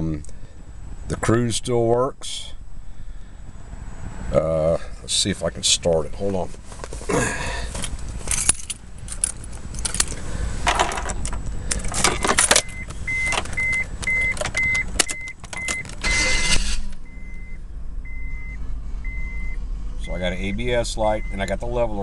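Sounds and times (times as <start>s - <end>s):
keys jangling and clicking: 7.8s - 16.0s
high-pitched warning chime beeping: 12.6s - 19.6s, 21.1s - 21.5s.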